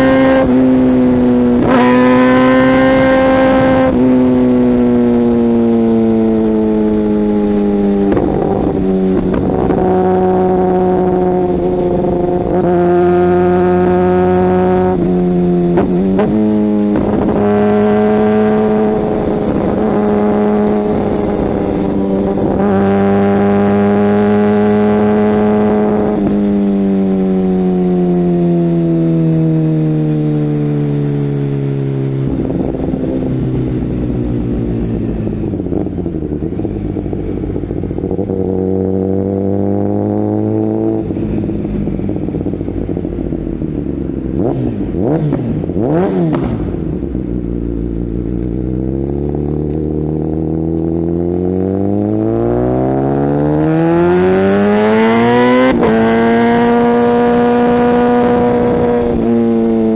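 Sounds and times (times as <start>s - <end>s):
motorcycle engine running: 0.0s - 59.9s.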